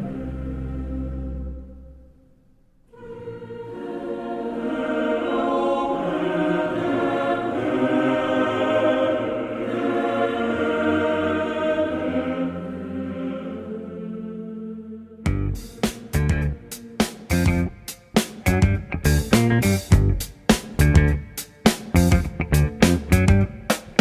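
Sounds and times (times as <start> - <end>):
choir singing sustained chords: 0.0 - 18.4.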